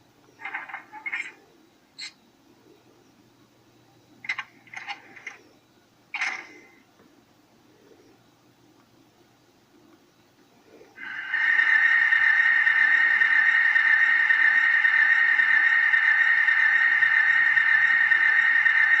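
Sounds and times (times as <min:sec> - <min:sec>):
tinny locomotive sound from small speaker: 0:11.0 - 0:19.0.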